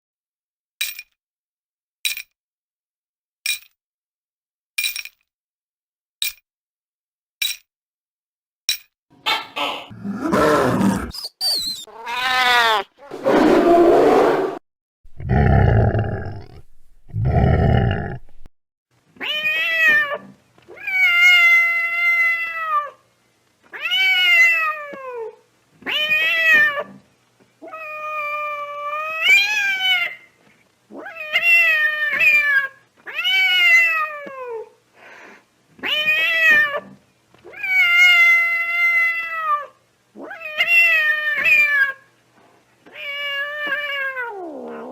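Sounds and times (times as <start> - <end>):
cat yowling: 11.8 - 13.0, 43.0 - 44.9.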